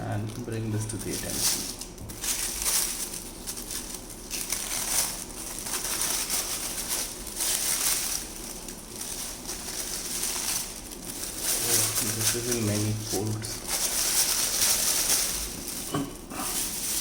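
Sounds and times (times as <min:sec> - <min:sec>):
packaging wrap crinkling: 0:00.0 - 0:17.0.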